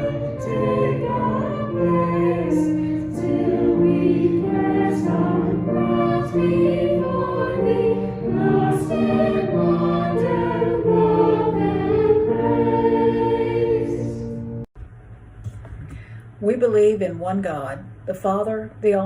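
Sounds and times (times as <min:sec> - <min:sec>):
choir singing a hymn: 0:00.0 - 0:14.6.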